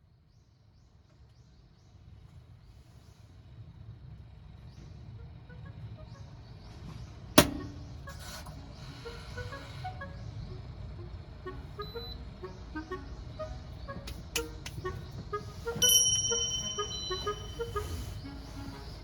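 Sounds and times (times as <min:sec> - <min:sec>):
low steady rumble: 0:02.2 - 0:19.0
light melodic background music: 0:05.2 - 0:19.0
bright ringing chime: 0:15.7 - 0:18.2.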